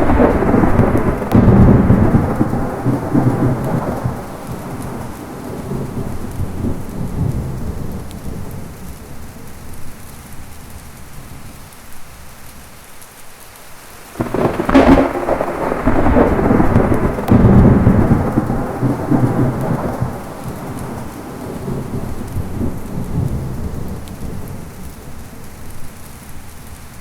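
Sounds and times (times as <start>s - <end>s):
loud thunderclap: 0.0s - 8.8s, 14.2s - 25.7s
rolling thunder rumble: 0.0s - 11.6s, 14.2s - 26.6s
rain: 0.0s - 27.0s.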